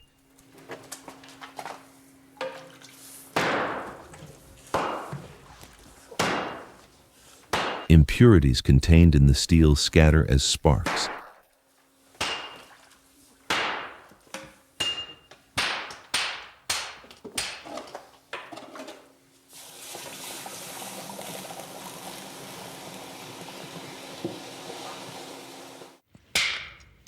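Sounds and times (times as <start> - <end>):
hammers striking steel on anvil: 3.4 - 4.1, 4.7 - 5.2, 6.2 - 6.8, 7.5 - 7.9, 12.2 - 12.8, 13.5 - 17.6.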